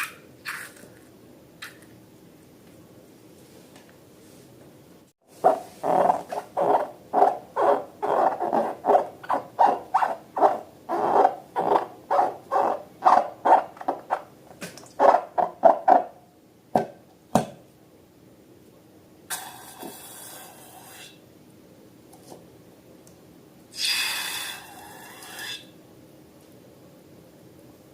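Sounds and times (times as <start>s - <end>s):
rubber balloon squeaking: 5.4s - 14.3s, 15.0s - 16.1s.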